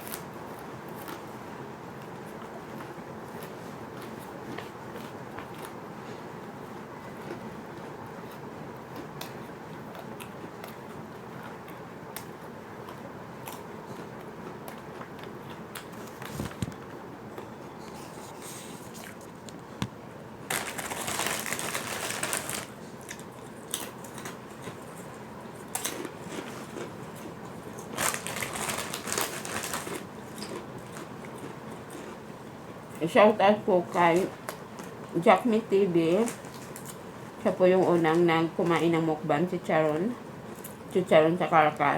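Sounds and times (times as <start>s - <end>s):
crunching crisp crackers: 7.0s - 19.6s, 20.5s - 32.7s, 36.2s - 37.1s.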